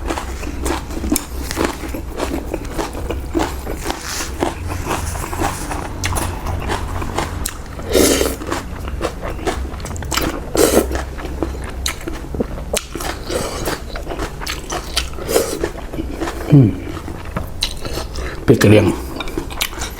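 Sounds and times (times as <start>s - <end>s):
low hum: 0.0s - 13.2s
person chewing food: 0.0s - 19.9s.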